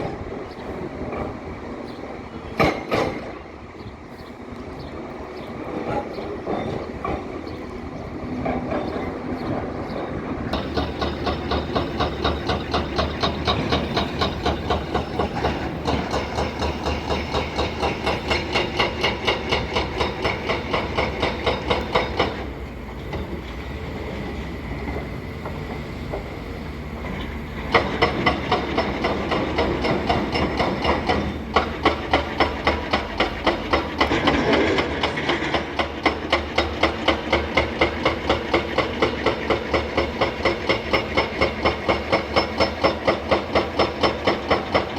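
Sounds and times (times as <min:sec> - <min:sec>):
excavator rapid clatter: 0:10.6 - 0:22.5, 0:27.0 - 0:44.9.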